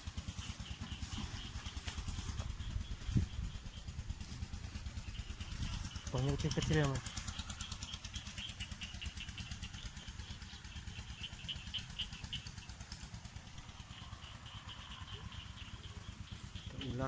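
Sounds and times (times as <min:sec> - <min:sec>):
small engine idling: 0:00.0 - 0:17.0
faint high chirping: 0:13.6 - 0:17.0.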